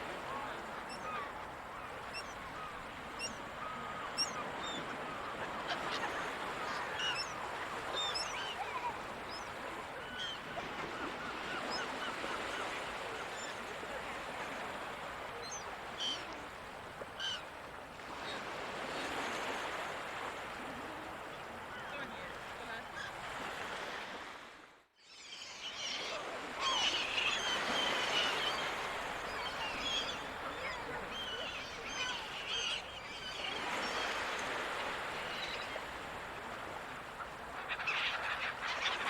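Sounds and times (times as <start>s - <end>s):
sea noise: 0.0s - 39.0s
gulls calling: 25.1s - 36.3s, 36.9s - 39.0s.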